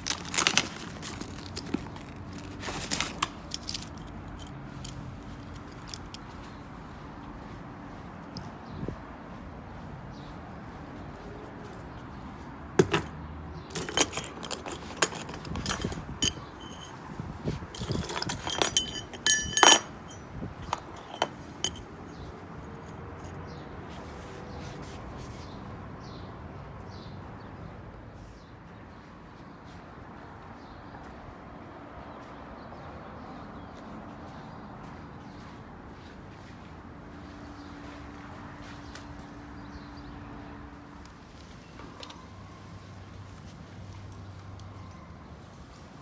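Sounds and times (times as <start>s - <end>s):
metal targets clinking and clanking: 2.8s - 5.0s, 13.7s - 17.0s, 17.8s - 21.9s.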